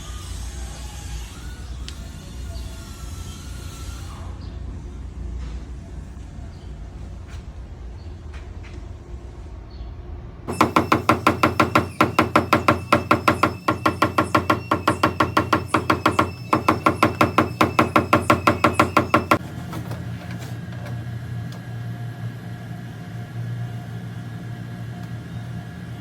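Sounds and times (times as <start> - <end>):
hammer tapping on sheet metal: 10.5 - 19.4.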